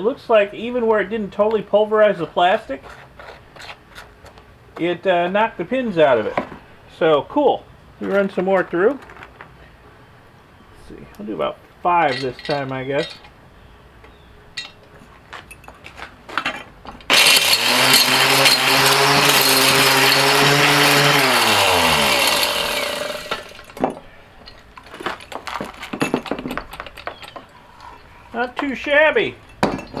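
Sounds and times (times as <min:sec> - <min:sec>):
light clicks of pieces handled: 0:12.0 - 0:13.4
small clinks of pieces: 0:12.0 - 0:13.4, 0:14.5 - 0:16.1, 0:17.0 - 0:30.0
electric motor grinding: 0:17.0 - 0:23.8.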